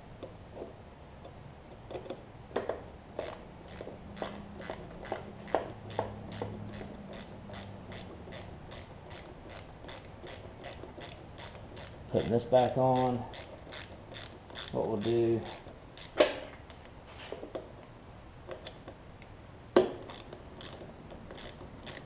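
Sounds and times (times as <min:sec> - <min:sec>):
ratchet wrench clicking: 0:03.2 - 0:16.3, 0:20.0 - 0:22.0.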